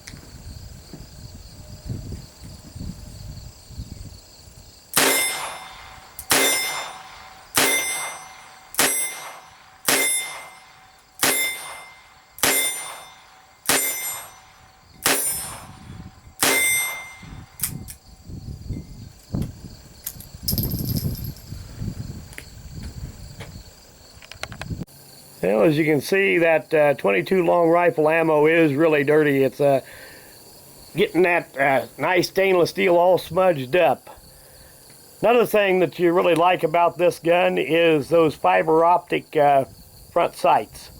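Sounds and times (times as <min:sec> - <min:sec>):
revolver gunshots: 0:05.0 - 0:17.2.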